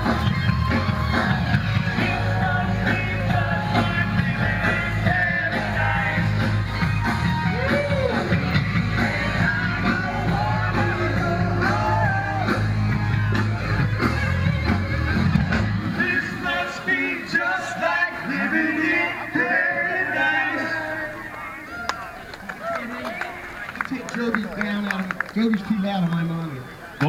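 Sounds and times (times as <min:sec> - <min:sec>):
bass notes: 0:00.0 - 0:16.5
live rock band: 0:00.0 - 0:17.0
people singing: 0:00.9 - 0:12.6, 0:15.9 - 0:21.6.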